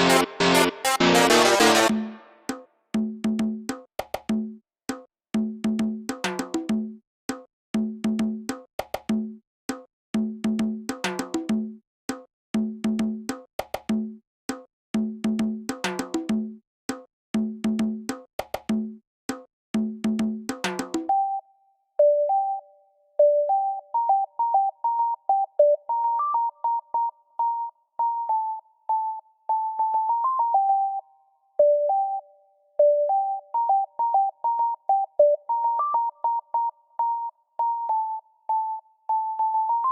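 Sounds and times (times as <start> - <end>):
synthesizer beep melody: 0.0 - 2.5, 21.1 - 39.9.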